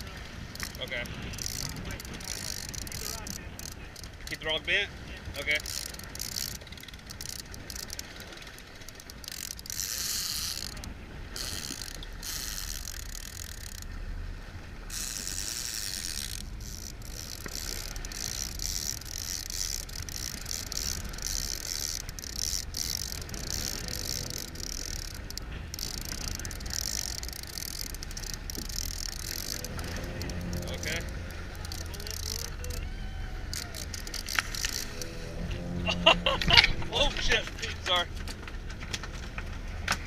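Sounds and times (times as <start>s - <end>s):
fishing reel ticking: 0.0s - 14.2s, 14.8s - 38.2s
low rumble: 10.6s - 39.9s.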